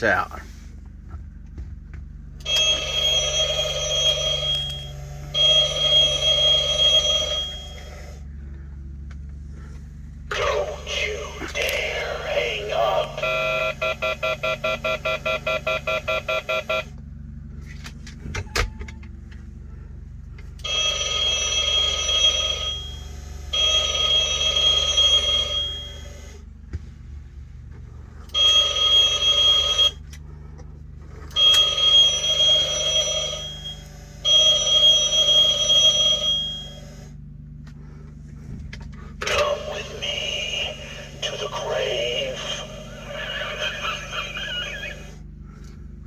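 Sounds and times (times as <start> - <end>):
electronic telephone ringer: 2.4 - 8.1, 20.6 - 26.1, 28.3 - 30.0, 31.4 - 37.0.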